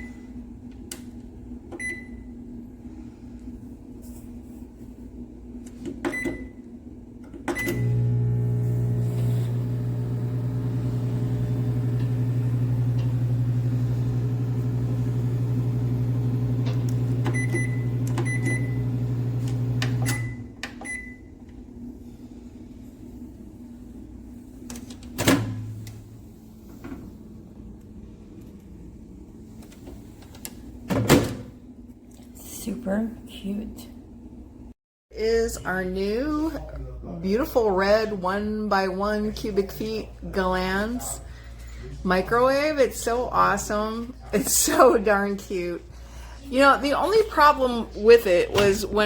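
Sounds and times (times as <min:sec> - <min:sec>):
microwave oven humming: 0:00.0 - 0:03.0, 0:06.0 - 0:22.4
microwave keypad beeps: 0:01.8 - 0:02.2, 0:16.9 - 0:21.3.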